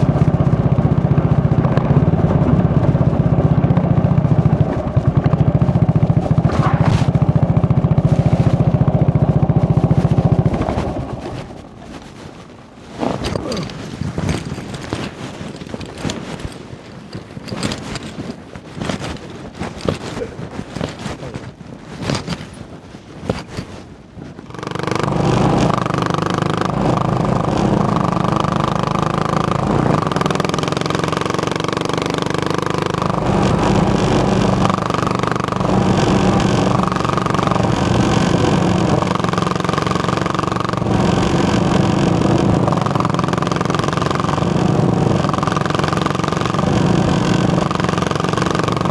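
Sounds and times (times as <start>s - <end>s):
wind on microphone: 0.0s - 27.9s
rustling and knocking: 1.6s - 24.8s.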